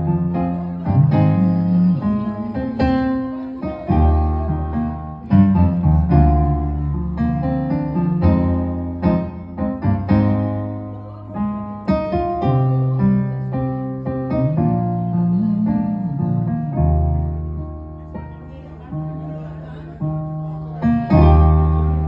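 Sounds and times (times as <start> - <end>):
low bass notes: 0.0 - 3.2, 3.9 - 10.9, 12.4 - 17.8
keyboard chords: 0.0 - 22.0.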